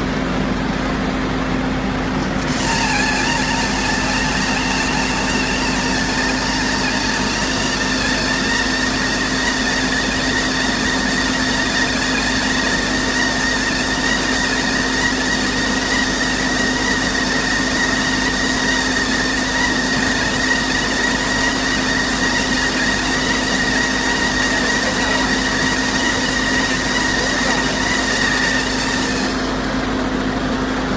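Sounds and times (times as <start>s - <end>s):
baler machine humming: 0.0s - 30.9s
high steady machine whine: 0.0s - 30.9s.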